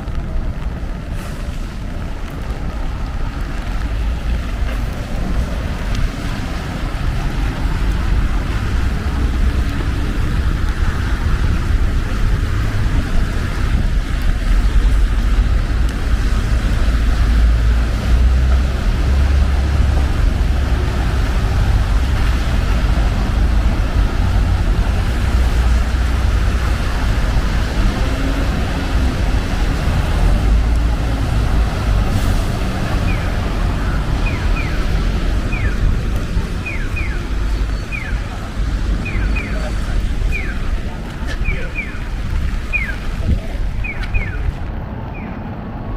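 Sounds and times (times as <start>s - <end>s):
low traffic rumble: 0.0s - 45.9s
rain hissing on wet pavement: 0.0s - 45.9s.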